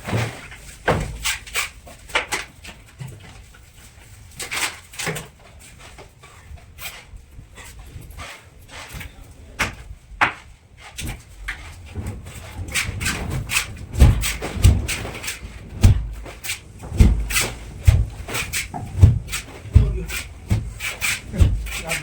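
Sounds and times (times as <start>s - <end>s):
heavy dull thumps: 11.0s - 22.0s
irregular knocking and tapping: 12.6s - 22.0s.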